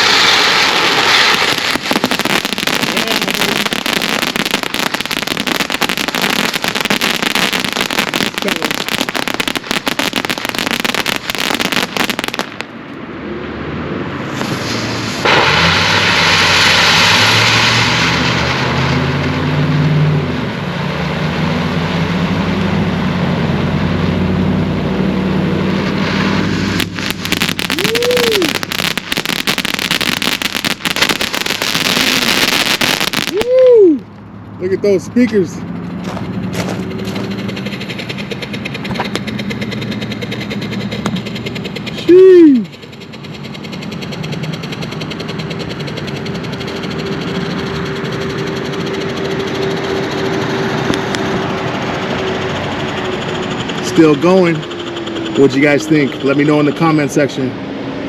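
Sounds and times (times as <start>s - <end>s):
hissing spray of sparks: 0.0s - 12.6s, 14.3s - 19.3s, 25.7s - 33.6s
firework fountain crackling: 0.0s - 12.9s, 14.2s - 19.7s, 20.3s - 34.0s, 34.8s - 57.5s.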